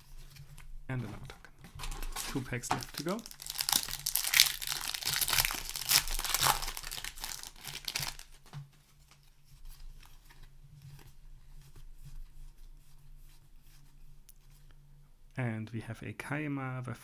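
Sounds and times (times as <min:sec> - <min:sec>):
cards rustling and clicking: 0:01.6 - 0:08.5
plastic wrapper tearing and crumpling: 0:01.8 - 0:08.4.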